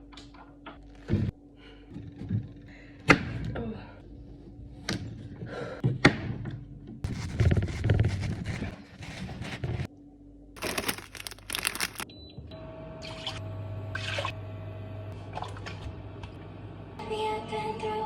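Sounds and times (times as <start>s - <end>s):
objects knocking set down: 10.6s - 12.0s
rustling: 10.6s - 12.0s.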